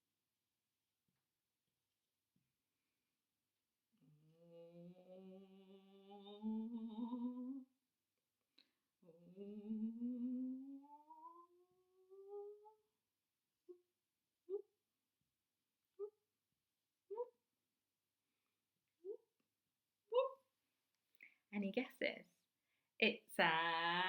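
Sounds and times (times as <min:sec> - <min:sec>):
woman humming: 0:04.0 - 0:07.7, 0:09.0 - 0:12.8, 0:17.1 - 0:17.4.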